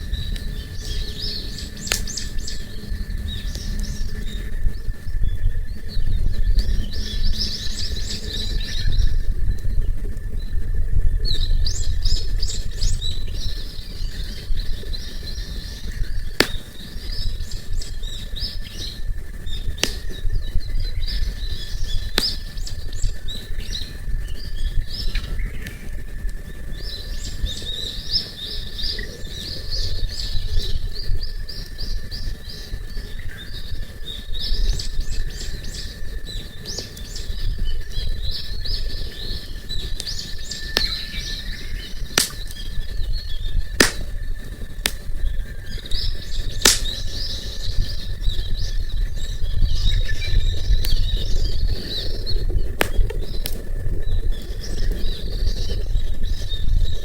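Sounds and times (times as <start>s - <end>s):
low rumble: 0.0s - 32.6s
campfire crackles: 0.0s - 57.0s
small birds chirping and singing: 0.0s - 57.0s.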